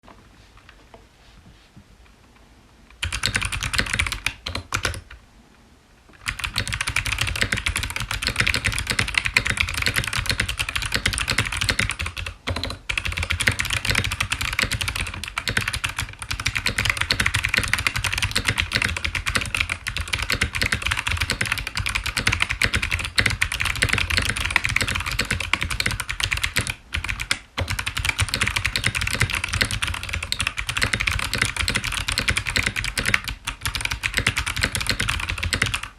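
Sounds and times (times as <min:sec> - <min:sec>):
fast mechanical keyboard typing: 0:03.0 - 0:05.1, 0:06.2 - 0:35.9.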